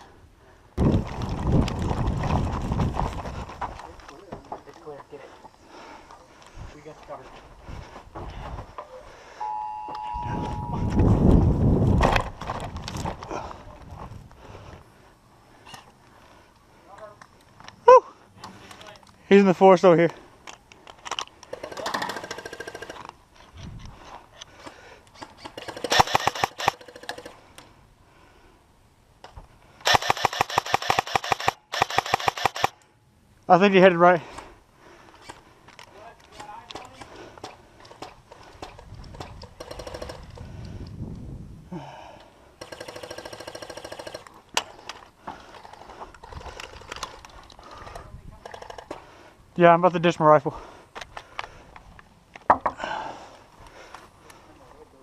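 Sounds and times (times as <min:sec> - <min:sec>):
airsoft guns firing bursts: 0:21.5 - 0:23.0, 0:25.2 - 0:27.4, 0:29.8 - 0:32.8, 0:39.6 - 0:40.2, 0:42.6 - 0:44.3.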